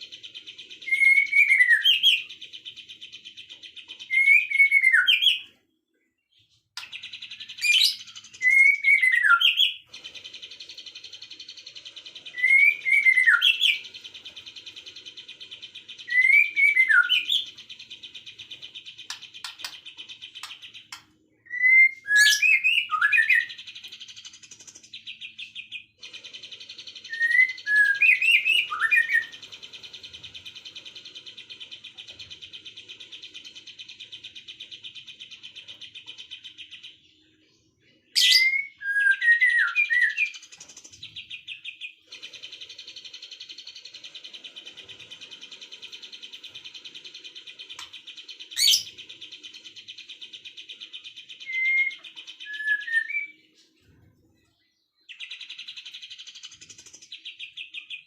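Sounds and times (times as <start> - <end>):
songbird whistled phrase: 38.2 - 40.3, 51.4 - 53.4.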